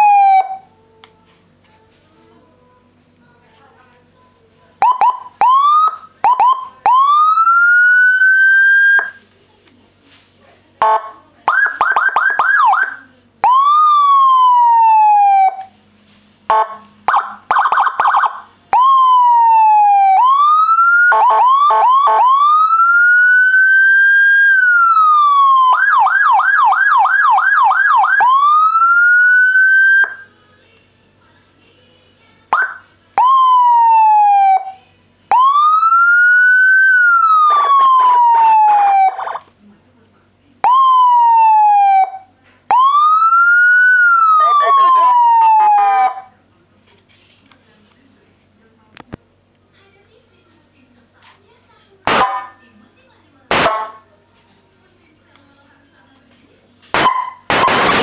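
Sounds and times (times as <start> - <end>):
electronic vehicle siren: 0.0 - 0.7, 4.8 - 9.2, 10.8 - 15.7, 16.5 - 30.3, 32.6 - 39.6, 40.6 - 46.3, 57.0 - 58.0.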